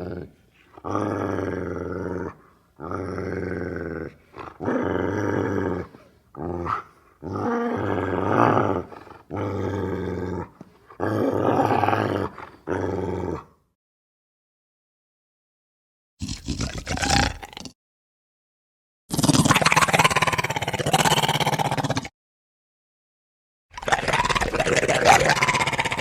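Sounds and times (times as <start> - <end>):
wolf growling: 0.0 - 13.5, 23.8 - 26.0.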